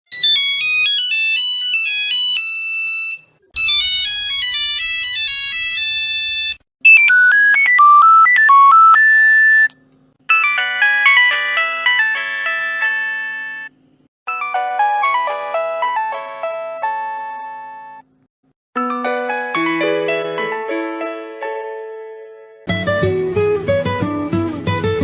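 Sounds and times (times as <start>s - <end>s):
mobile phone ringtones: 0.2s - 9.7s, 10.3s - 13.7s.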